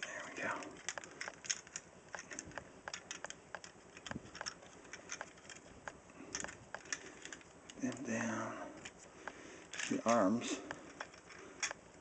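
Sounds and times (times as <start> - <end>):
plastic toy clicks and rattles: 0.8 - 5.6.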